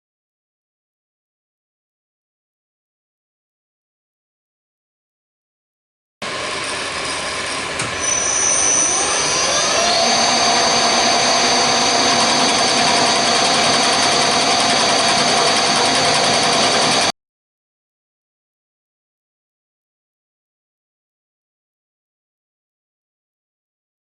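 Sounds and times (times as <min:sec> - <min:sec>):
power tool motor whining: 0:06.3 - 0:17.1.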